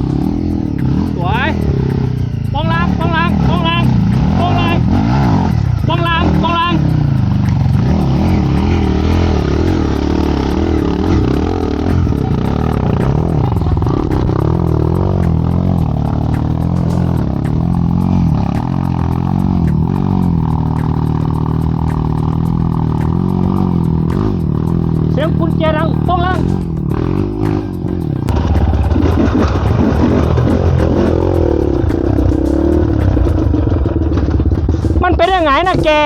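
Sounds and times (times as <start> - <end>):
dirt bike engine revving: 0.0 - 36.0.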